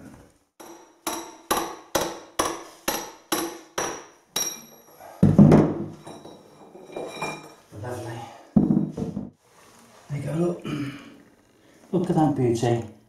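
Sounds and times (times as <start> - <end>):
hammer striking steel chisel: 0.6 - 5.0.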